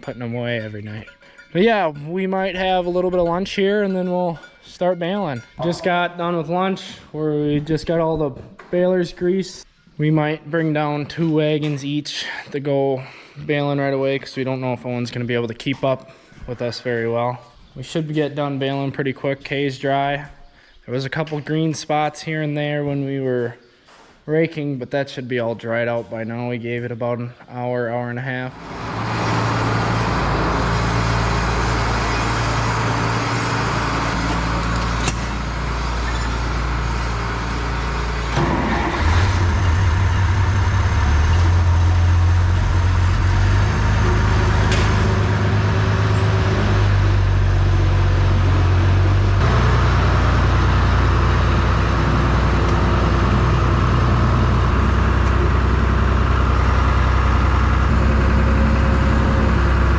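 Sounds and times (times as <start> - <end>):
tractor engine running: 28.5 - 59.9.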